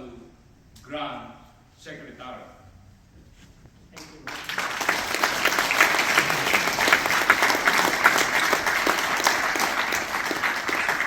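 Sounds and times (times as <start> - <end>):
audience applauding: 4.0 - 11.0.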